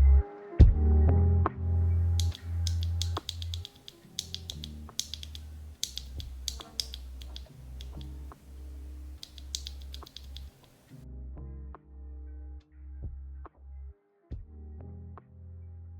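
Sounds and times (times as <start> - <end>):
mechanical keyboard typing: 2.2 - 10.8.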